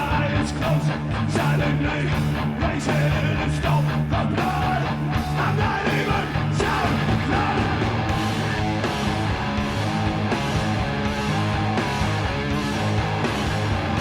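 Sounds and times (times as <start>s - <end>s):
yelled vocal: 0.0s - 9.3s
loud guitar rock music: 0.0s - 14.0s
pounding drums: 4.5s - 9.5s.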